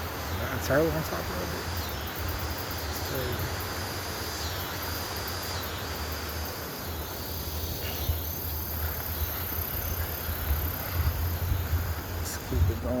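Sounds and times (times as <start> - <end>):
insects buzzing: 0.0 - 13.0.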